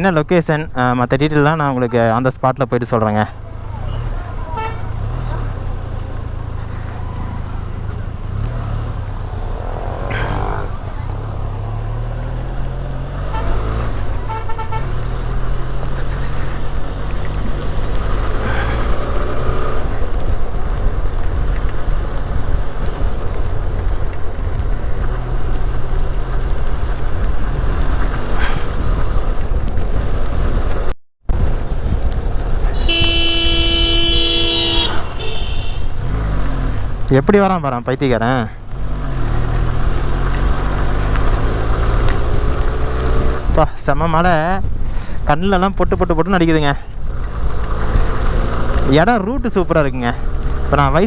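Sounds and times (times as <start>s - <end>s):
road and wind noise: 0.0s - 51.0s
motorcycle engine running: 3.7s - 13.0s, 31.5s - 37.0s
vehicle horn: 4.5s - 5.0s, 13.2s - 15.0s, 32.7s - 36.2s
short horn beep: 32.7s - 36.0s.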